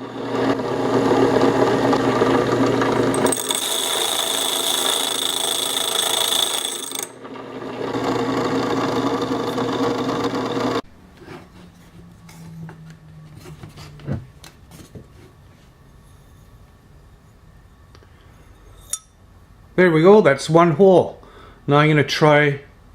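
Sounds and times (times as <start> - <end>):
drill humming: 0.0 - 10.8
hole saw grinding glass: 0.5 - 7.3.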